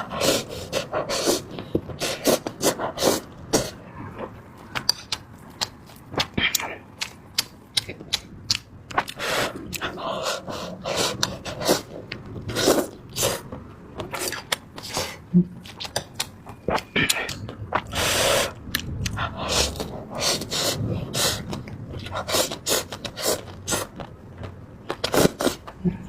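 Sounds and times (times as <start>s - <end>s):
person slurping noodles: 0.0s - 3.8s, 9.2s - 13.4s, 17.1s - 23.9s, 25.0s - 25.7s
wet mouth clicks: 4.7s - 10.0s, 15.6s - 24.1s.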